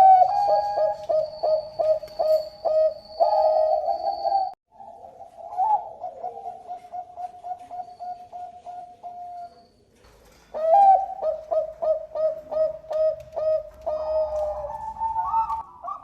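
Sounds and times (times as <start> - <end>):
dove cooing: 0.0 - 9.7, 10.5 - 16.0.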